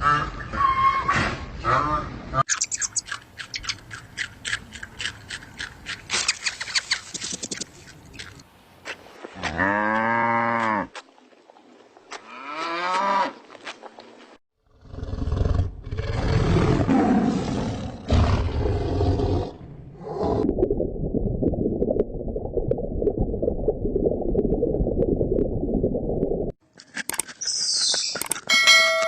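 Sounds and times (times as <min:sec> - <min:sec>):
low rough roaring: 0:14.7 - 0:20.4.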